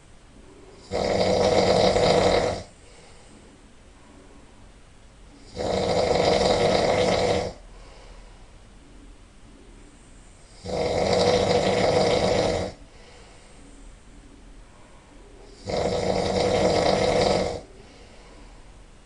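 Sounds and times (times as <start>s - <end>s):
man snoring loudly: 0.8s - 2.7s, 5.4s - 7.6s, 10.5s - 12.8s, 15.6s - 17.7s.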